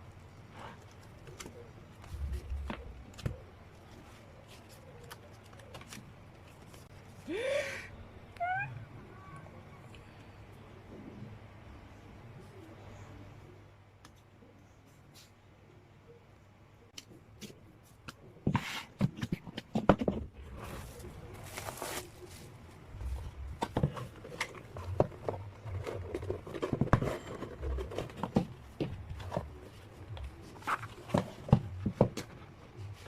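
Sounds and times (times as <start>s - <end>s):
hands handling album packaging: 0.6s - 7.2s, 17.0s - 33.0s
wrapping rustling and tearing: 20.6s - 23.2s.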